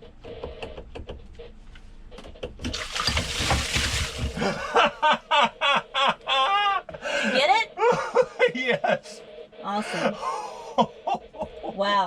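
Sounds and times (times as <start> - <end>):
water gushing in: 2.7 - 4.6.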